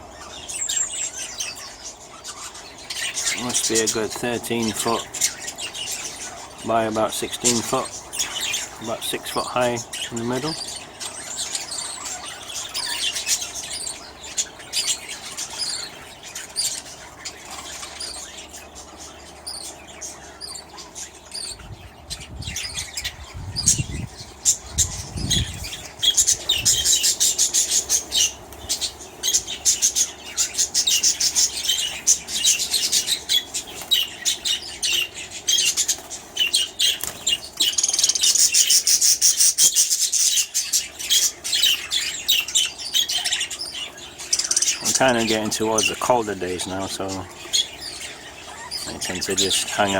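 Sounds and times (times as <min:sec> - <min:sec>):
budgerigars chattering and chirping: 0:00.0 - 0:49.9
wings fluttering: 0:20.8 - 0:41.9.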